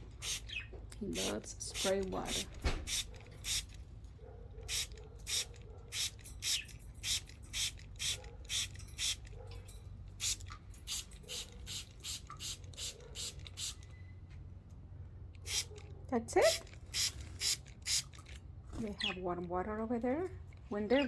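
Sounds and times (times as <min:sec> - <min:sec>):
spray bottle hisses: 0:01.2 - 0:03.7, 0:10.2 - 0:13.8.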